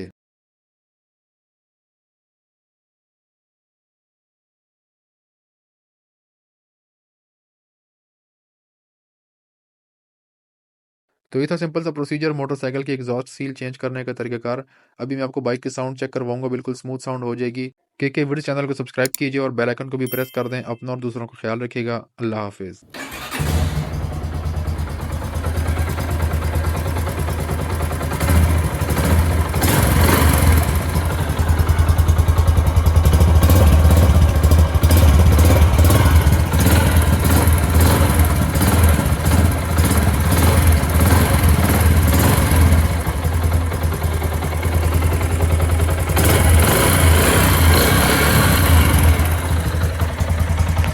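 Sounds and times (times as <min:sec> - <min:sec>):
motorcycle engine running: 0:23.0 - 0:50.9.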